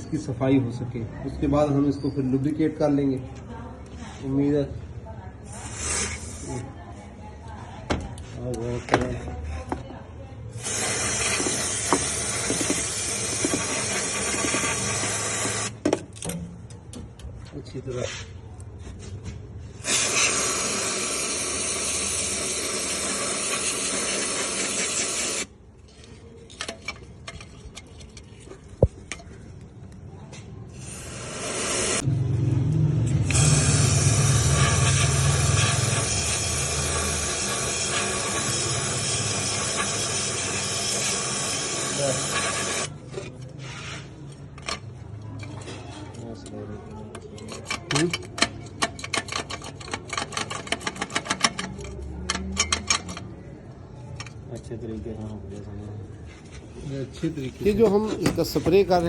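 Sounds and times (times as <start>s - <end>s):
aerosol spray hissing: 5.5s - 6.6s, 10.6s - 15.8s, 19.8s - 25.5s, 30.8s - 32.1s.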